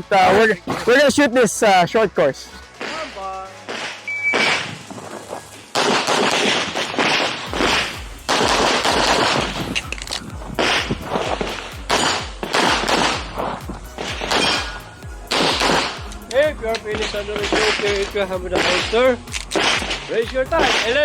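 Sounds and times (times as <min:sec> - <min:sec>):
pistol shots: 0:03.7 - 0:04.9, 0:05.7 - 0:09.9, 0:11.9 - 0:13.4, 0:14.0 - 0:16.2, 0:18.6 - 0:21.0.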